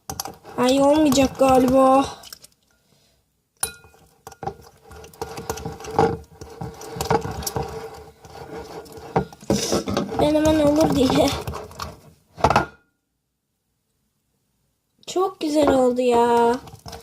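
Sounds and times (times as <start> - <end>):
spoon clinking against bowl: 3.6 - 4.4.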